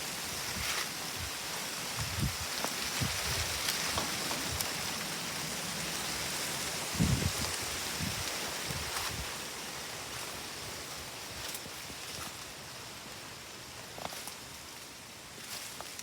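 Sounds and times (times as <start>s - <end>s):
wind rustling leaves: 0.0s - 16.0s
wind buffeting microphone: 6.8s - 9.4s.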